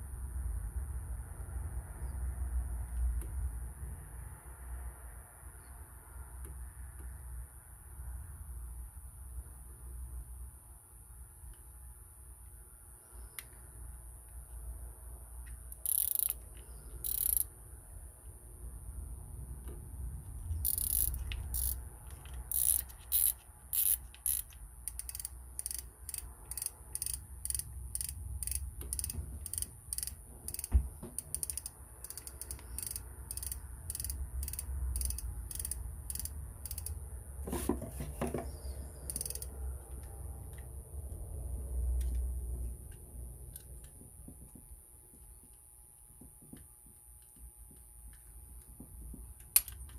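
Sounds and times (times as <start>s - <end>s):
fishing reel clicking: 15.8s - 16.4s, 17.0s - 17.5s, 20.6s - 21.8s, 22.5s - 37.0s, 39.1s - 39.5s.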